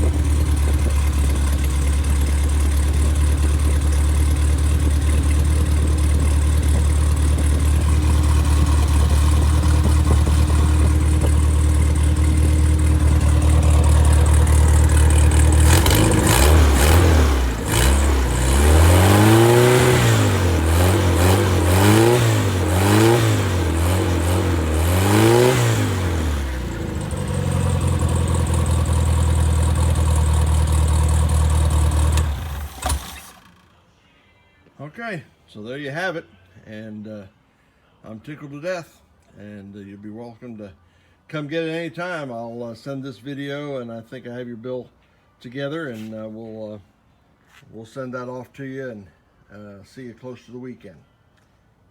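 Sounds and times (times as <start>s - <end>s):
engine idling and revving: 0.0s - 33.6s.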